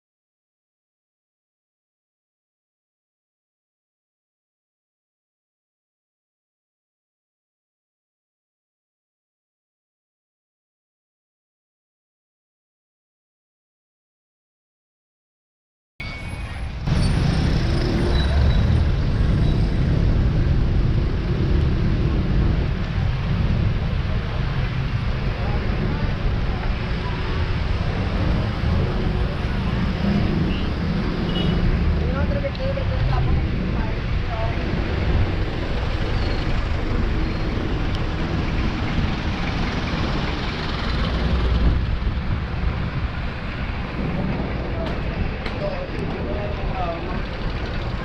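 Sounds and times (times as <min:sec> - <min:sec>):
road and traffic noise: 0:16.0 - 0:48.0
wind rumble on microphone: 0:16.9 - 0:48.0.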